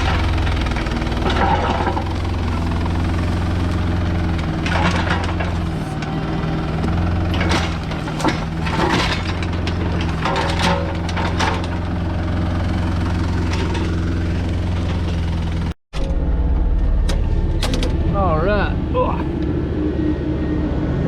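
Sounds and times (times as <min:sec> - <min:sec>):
clattering noise bursts: 0:00.0 - 0:11.9
diesel engine humming: 0:00.0 - 0:21.0.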